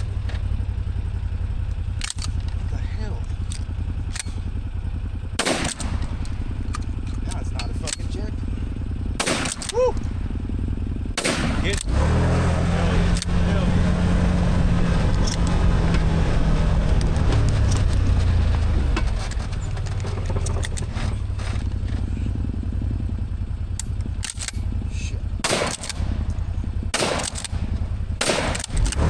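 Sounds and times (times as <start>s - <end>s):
rattling and clatter: 0.0s - 29.0s
utility vehicle engine running: 0.0s - 29.0s
loud bangs: 4.0s - 8.4s, 9.2s - 10.4s, 11.1s - 21.5s, 25.4s - 29.0s.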